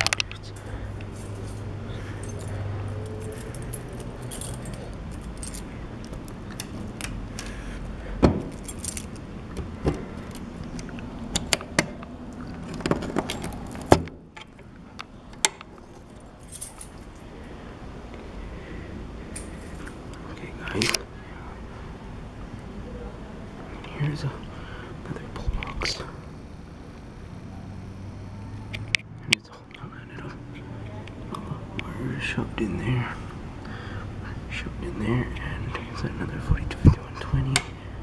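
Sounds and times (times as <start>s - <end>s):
keys jingling: 0.0s - 7.6s, 8.4s - 9.3s, 12.6s - 14.6s, 15.8s - 17.2s, 19.3s - 20.0s
low steady hum: 0.0s - 38.0s.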